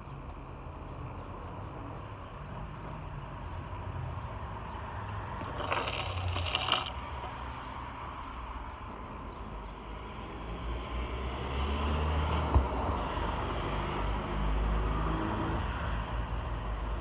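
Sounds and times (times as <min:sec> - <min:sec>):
scraping rattle: 0:05.1 - 0:07.0.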